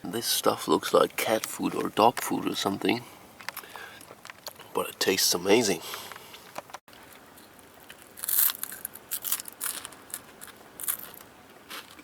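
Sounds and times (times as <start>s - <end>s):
crunching: 6.2s - 12.0s
person chewing crackers: 6.3s - 12.0s.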